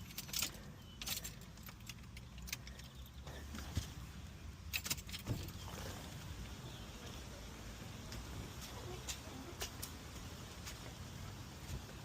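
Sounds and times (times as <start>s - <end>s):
small metal objects clicking and jingling: 0.0s - 3.2s.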